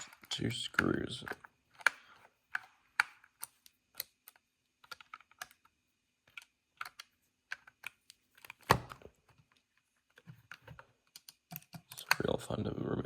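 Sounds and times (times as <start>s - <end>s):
screwdriver clicking and tapping: 10.6s - 12.2s.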